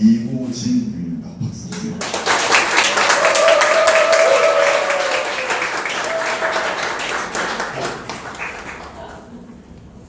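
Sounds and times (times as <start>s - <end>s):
audience applauding: 1.8s - 9.5s.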